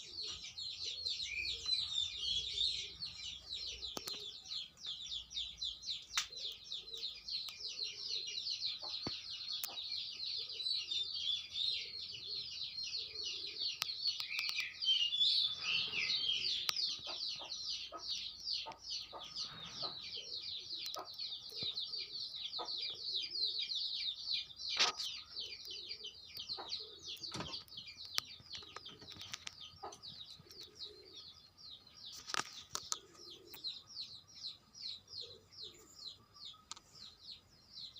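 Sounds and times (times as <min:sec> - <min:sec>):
birds chirping rapidly: 0:00.0 - 0:37.9
low cooing calls: 0:11.7 - 0:23.7, 0:24.8 - 0:27.6, 0:29.8 - 0:31.4, 0:32.8 - 0:33.9, 0:34.9 - 0:36.2.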